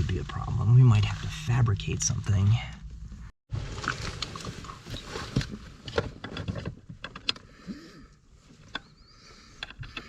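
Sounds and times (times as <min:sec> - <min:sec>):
clicks and knocks of car parts: 0:05.4 - 0:07.4.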